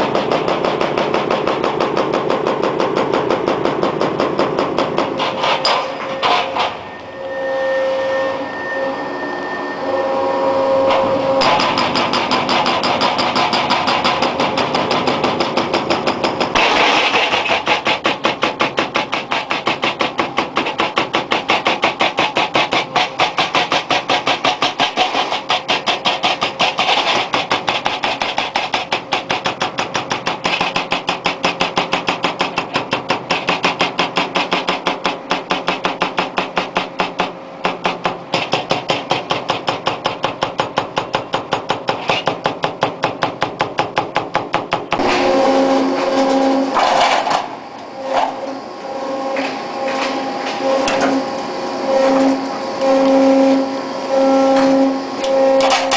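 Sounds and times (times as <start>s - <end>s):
hydraulic breaker hammering: 0.0s - 7.0s, 10.8s - 55.9s
power pack drone: 45.0s - 55.9s.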